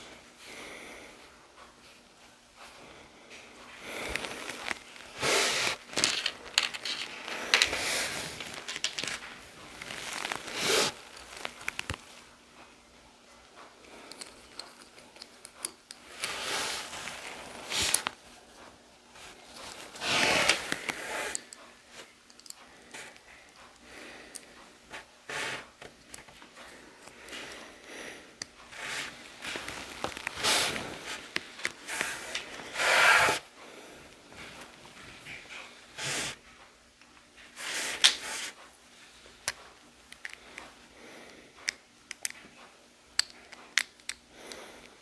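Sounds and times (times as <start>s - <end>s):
plastic pieces rubbing and scraping: 4.0s - 12.1s, 28.7s - 33.4s
plastic pieces clicking together: 4.2s - 12.0s, 22.2s - 22.6s, 43.1s - 44.3s.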